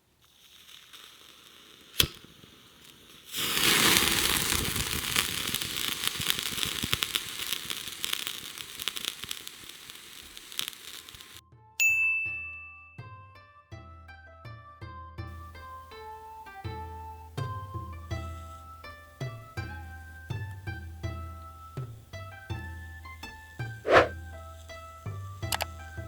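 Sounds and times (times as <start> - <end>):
food sizzling on griddle: 0.0 - 11.4
plucked-string background music: 13.6 - 26.0.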